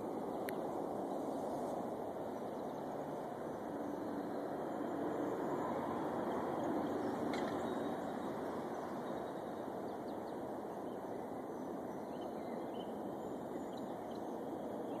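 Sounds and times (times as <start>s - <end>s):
outdoor background noise: 0.0s - 15.0s
faint bird chirps: 6.6s - 15.0s.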